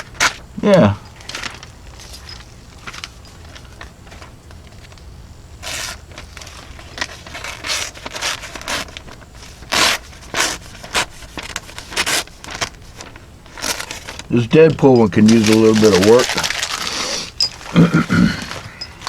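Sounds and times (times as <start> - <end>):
knife slicing paper: 5.6 - 14.5, 15.2 - 17.4.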